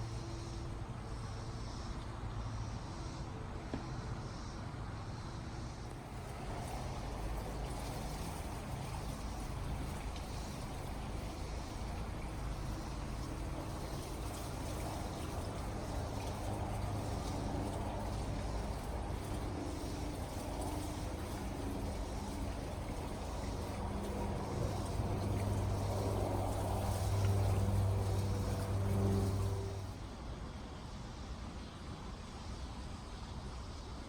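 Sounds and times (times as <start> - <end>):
water trickling: 5.9 - 30.1.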